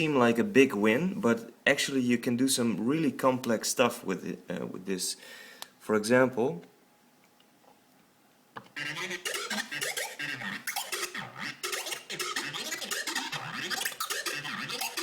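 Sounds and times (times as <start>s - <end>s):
sampler chopped hits: 8.8s - 15.0s.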